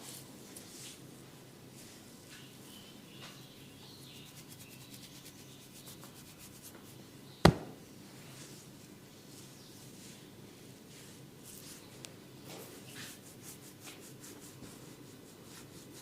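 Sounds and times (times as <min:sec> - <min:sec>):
loud sharp snap: 0:07.4 - 0:07.8
soft rubbing with light ticks: 0:10.9 - 0:16.0.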